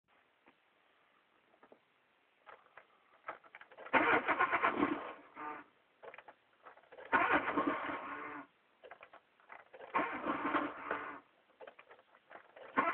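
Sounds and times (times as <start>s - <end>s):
car engine cranking on starter: 3.2s - 12.9s.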